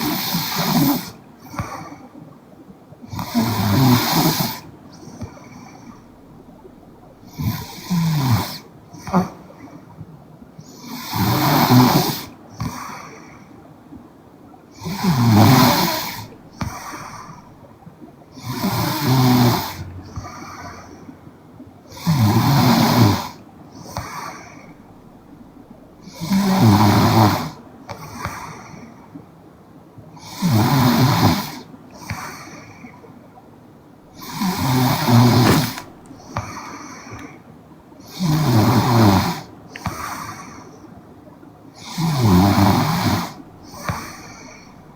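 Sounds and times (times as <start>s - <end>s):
woman snoring: 7.3s - 9.3s, 14.8s - 16.3s, 18.4s - 19.8s, 26.0s - 27.6s, 34.2s - 36.3s.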